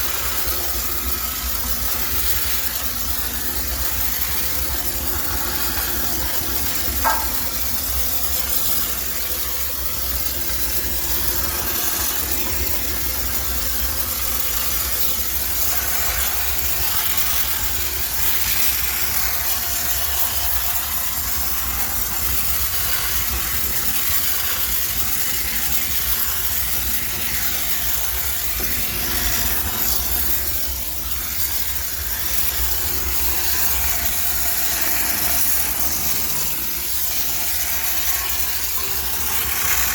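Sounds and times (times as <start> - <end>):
hiss of steam: 0.0 - 39.9.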